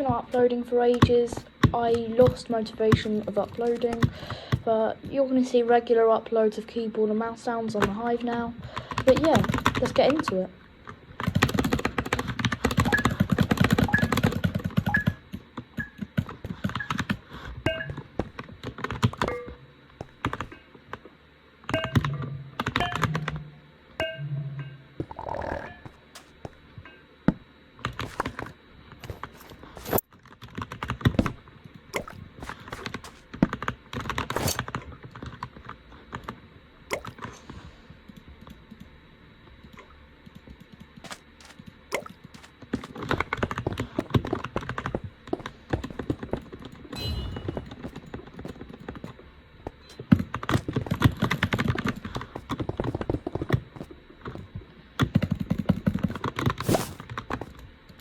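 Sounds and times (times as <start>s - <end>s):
keyboard typing: 3.0s - 4.3s.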